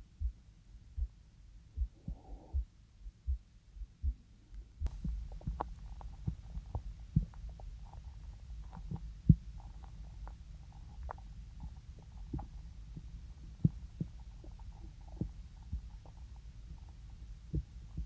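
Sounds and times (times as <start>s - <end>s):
heartbeat thumps: 0.1s - 0.4s, 1.0s - 1.2s, 1.8s - 8.0s, 8.6s - 10.4s, 11.0s - 18.0s
crackling gurgling sounds: 4.9s - 18.0s.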